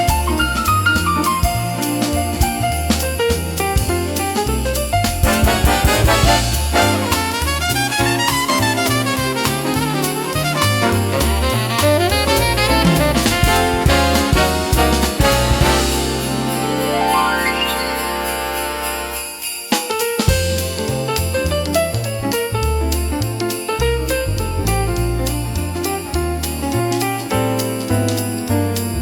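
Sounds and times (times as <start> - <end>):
walking bass: 0.0 - 16.9, 20.3 - 29.0
drum kit: 0.0 - 29.0
horn melody: 5.2 - 19.8.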